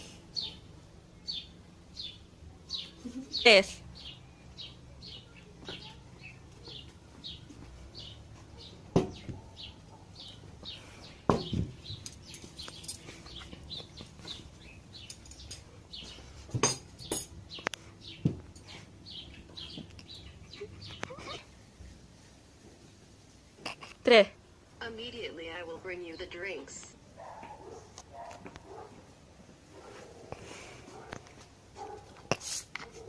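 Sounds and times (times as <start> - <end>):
small bird chirping: 17.0 - 21.5.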